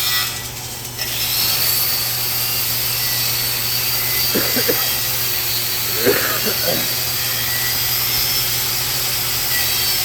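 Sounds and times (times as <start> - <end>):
wire wheel whirring and whining: 0.0 - 10.0
constant low hum: 4.3 - 9.2.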